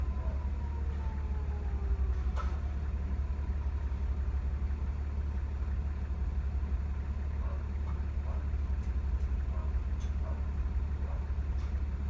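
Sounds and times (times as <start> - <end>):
faint siren tone: 0.0 - 3.4
vehicle engine idling: 0.0 - 12.0.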